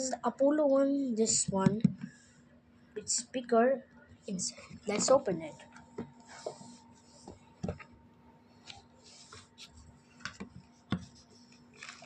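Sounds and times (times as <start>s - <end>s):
packaging rustling: 11.4s - 12.0s.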